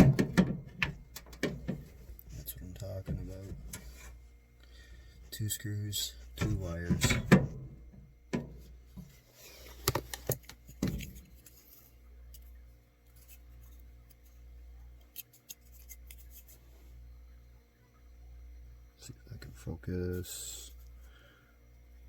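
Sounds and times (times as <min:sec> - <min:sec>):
small metallic handling sounds: 0:00.0 - 0:04.3, 0:06.2 - 0:17.0
steady low hum: 0:00.0 - 0:22.0.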